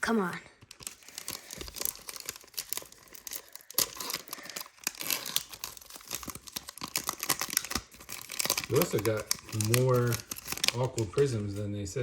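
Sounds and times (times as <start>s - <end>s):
foil wrapper crinkling and tearing: 0.6s - 11.8s
cards being handled: 3.8s - 11.7s.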